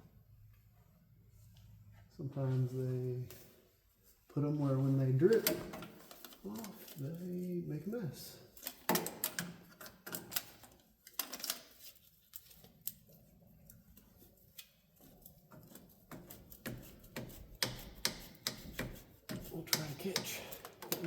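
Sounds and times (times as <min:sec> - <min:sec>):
tools clicking and tapping: 0:08.6 - 0:13.0, 0:13.7 - 0:21.0.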